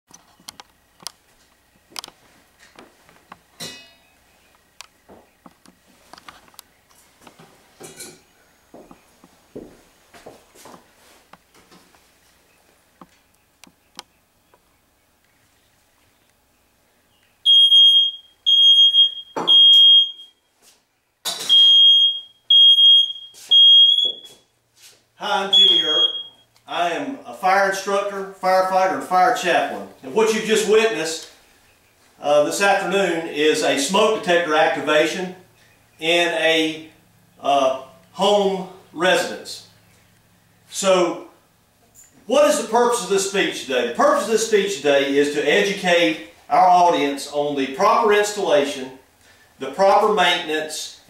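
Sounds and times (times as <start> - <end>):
smoke alarm beeping: 17.4 - 20.5, 21.5 - 24.5, 25.4 - 26.5.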